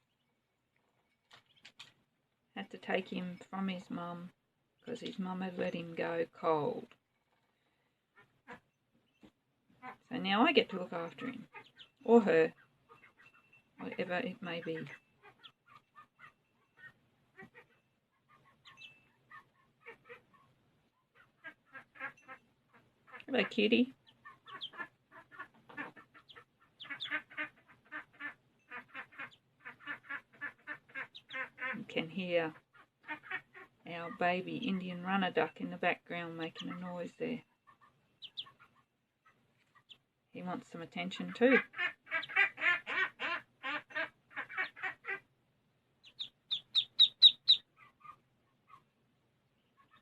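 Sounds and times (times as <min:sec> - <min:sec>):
duckling peeping: 0:10.9 - 0:20.5, 0:21.2 - 0:31.8, 0:37.6 - 0:40.0, 0:41.2 - 0:45.2, 0:46.0 - 0:48.8, 0:49.6 - 0:50.0.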